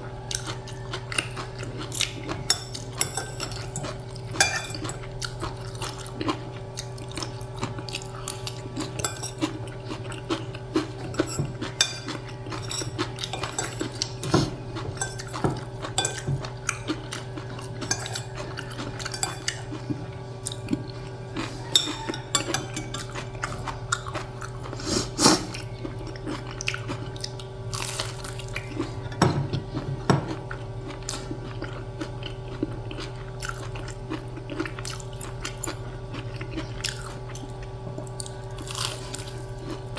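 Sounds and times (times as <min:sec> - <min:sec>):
steady low hum: 0:00.0 - 0:39.9
person chewing: 0:00.2 - 0:39.9
cutlery scraping a plate: 0:00.4 - 0:05.1, 0:08.3 - 0:09.6, 0:10.8 - 0:20.7, 0:21.4 - 0:24.1.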